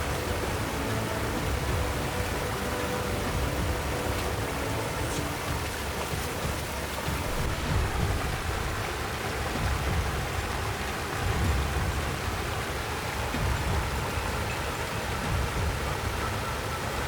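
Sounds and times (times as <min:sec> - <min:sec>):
rain falling: 0:00.0 - 0:17.0.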